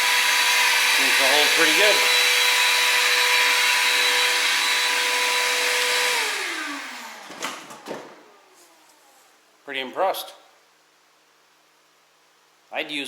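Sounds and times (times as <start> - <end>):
vacuum cleaner motor whining: 0.0 - 9.4.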